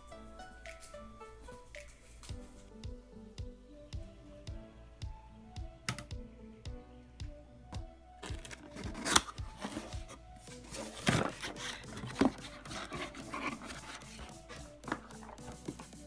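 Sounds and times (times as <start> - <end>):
background music: 0.0 - 16.0
keyboard parts clicking and scraping: 8.2 - 16.0.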